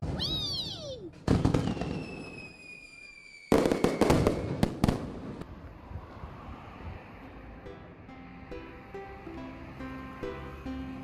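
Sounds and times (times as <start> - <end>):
firework whistling: 0.0 - 5.2
firework cracks and bangs: 1.2 - 5.5.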